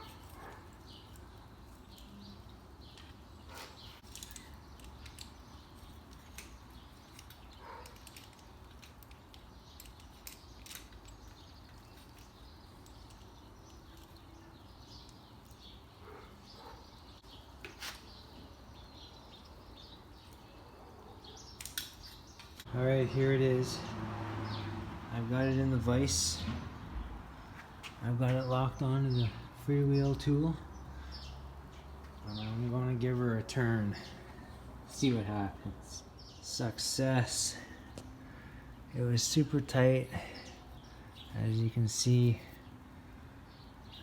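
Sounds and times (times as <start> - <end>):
clicks and knocks of hand tools: 6.1 - 14.3.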